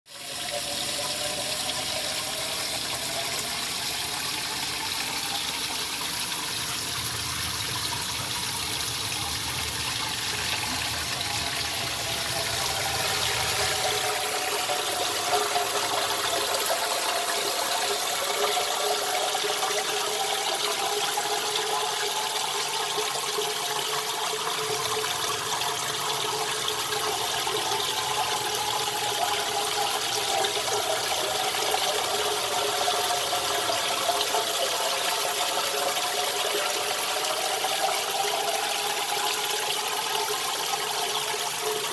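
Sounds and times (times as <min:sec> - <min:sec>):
sump pump running: 0:00.1 - 0:41.9
water gushing and churning: 0:01.1 - 0:19.7.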